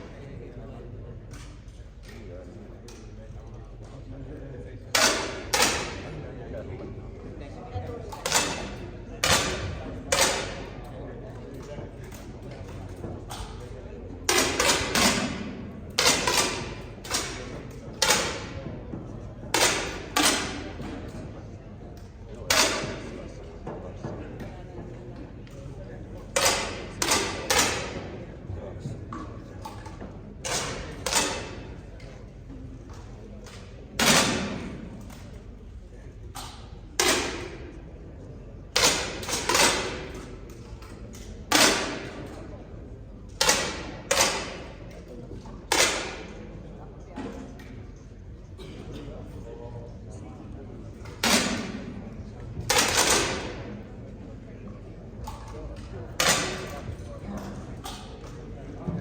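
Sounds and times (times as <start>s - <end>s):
air rifle shots: 14.3s - 18.6s.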